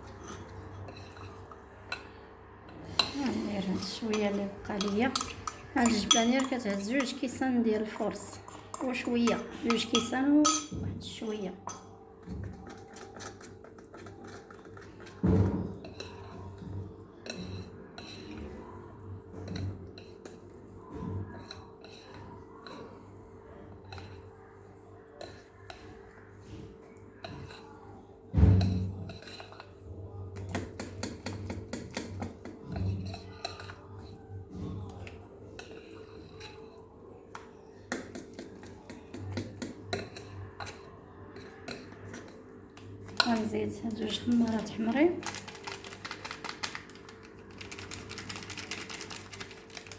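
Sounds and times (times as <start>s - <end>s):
utensil scraping mixing bowl: 0.0s - 10.8s, 11.6s - 18.6s.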